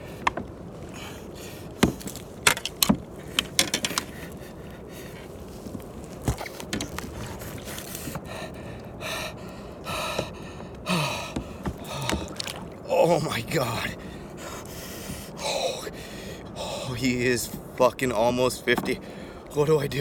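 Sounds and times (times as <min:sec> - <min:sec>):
hard gasping breaths: 0:00.9 - 0:02.0, 0:07.1 - 0:12.6, 0:14.0 - 0:17.0, 0:19.0 - 0:19.5
knocks against a kayak: 0:01.8 - 0:04.1, 0:11.3 - 0:12.7.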